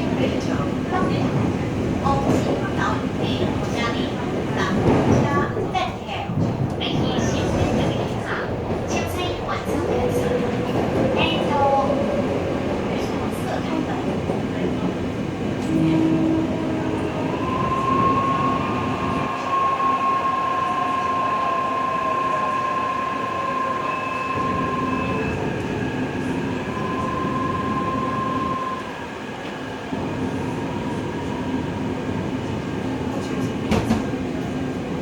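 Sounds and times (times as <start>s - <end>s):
train running rumble: 0.0s - 19.4s.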